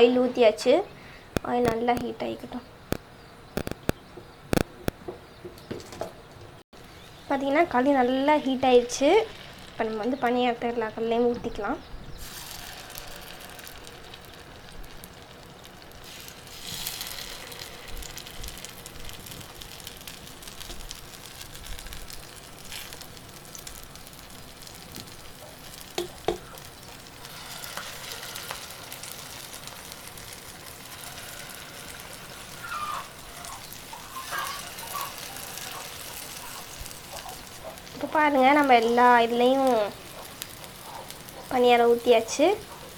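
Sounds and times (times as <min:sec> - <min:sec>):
batter sizzling in hot oil: 0:06.8 - 0:42.9.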